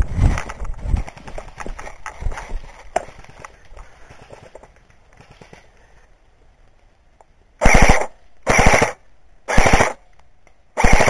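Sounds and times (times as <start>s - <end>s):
airsoft gun full-auto bursts: 7.6s - 10.0s, 10.8s - 11.0s.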